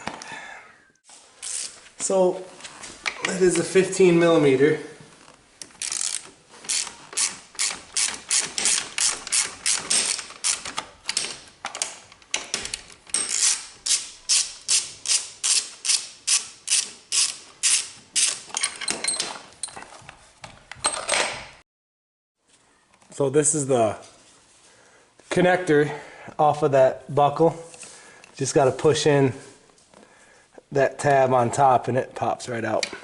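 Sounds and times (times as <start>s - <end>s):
ratchet wrench clicking: 5.7s - 10.8s, 13.2s - 18.4s.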